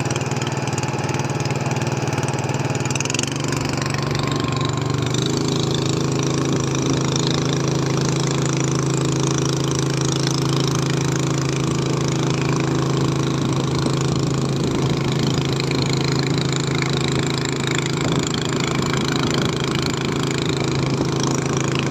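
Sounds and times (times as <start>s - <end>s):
small boat engine running: 0.0s - 21.9s.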